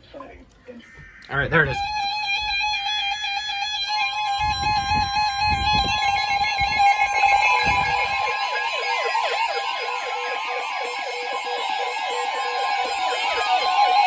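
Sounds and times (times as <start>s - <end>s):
siren-like warble: 1.4s - 14.0s
low thumps: 4.0s - 8.4s.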